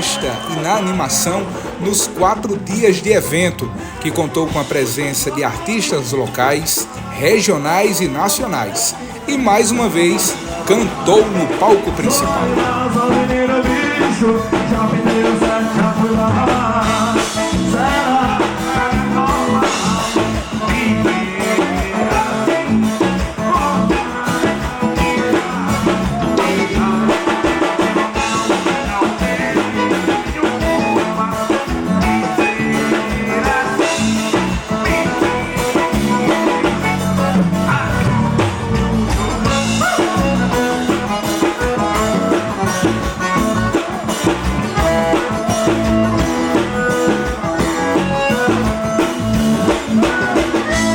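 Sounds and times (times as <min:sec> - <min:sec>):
live band music with singing: 0:00.0 - 0:50.9.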